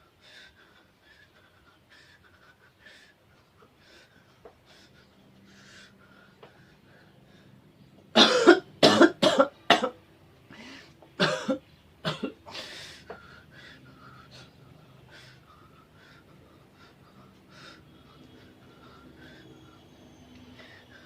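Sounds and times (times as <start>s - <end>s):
person coughing: 8.2s - 10.0s, 11.2s - 12.4s.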